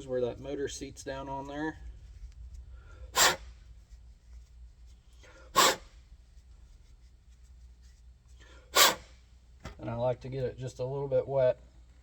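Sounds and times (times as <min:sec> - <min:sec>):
sharp bursts of breath: 0:02.7 - 0:03.7, 0:05.1 - 0:06.0, 0:08.4 - 0:09.3.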